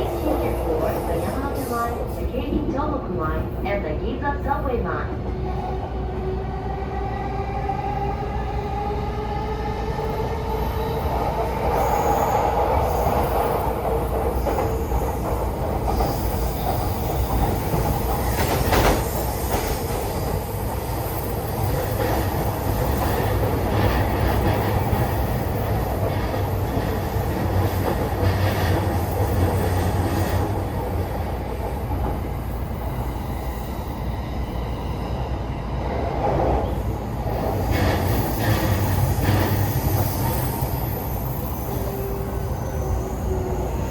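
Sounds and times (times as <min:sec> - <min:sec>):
train wheels rumbling on rails: 0:00.0 - 0:43.9.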